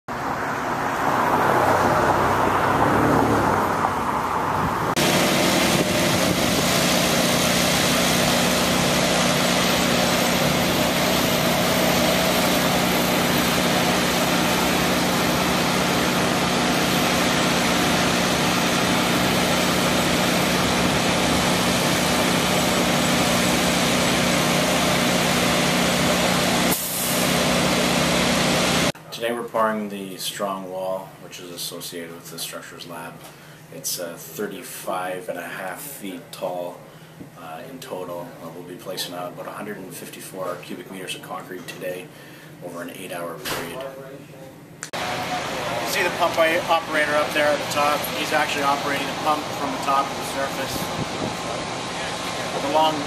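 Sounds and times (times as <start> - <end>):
heavy diesel engine running: 4.9 - 29.0, 45.0 - 53.0.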